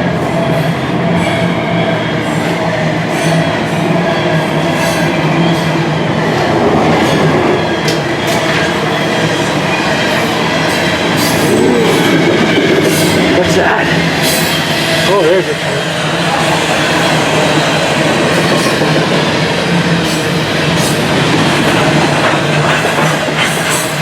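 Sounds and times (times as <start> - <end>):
train rumbling overhead: 0.0 - 24.0
short clacks of train: 4.4 - 11.4, 20.0 - 24.0.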